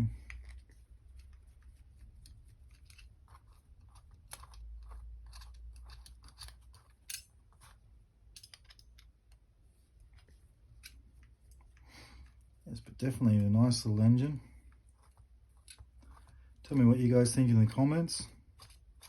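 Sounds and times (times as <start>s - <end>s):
small metal tool clicks: 4.3s - 7.3s, 8.4s - 9.1s.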